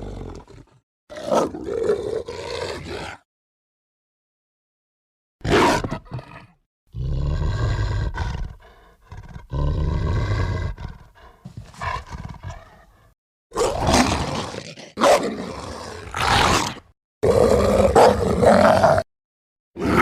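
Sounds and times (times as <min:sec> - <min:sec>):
creature snarling: 0:05.4 - 0:19.1, 0:19.8 - 0:20.0
deep creature growls: 0:05.4 - 0:19.1, 0:19.8 - 0:20.0.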